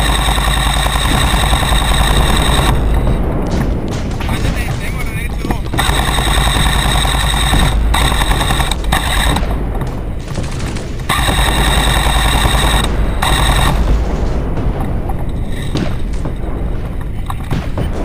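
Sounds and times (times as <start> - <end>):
airsoft gun firing bursts: 0.0 - 3.2, 5.7 - 9.6, 10.2 - 14.0
steady low rumble: 0.0 - 18.0.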